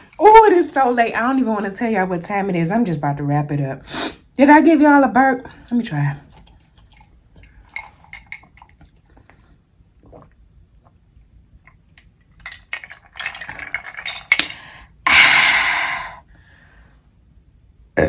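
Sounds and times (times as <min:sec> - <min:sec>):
cutlery and dishes clinking: 0:07.0 - 0:08.9, 0:12.4 - 0:14.8.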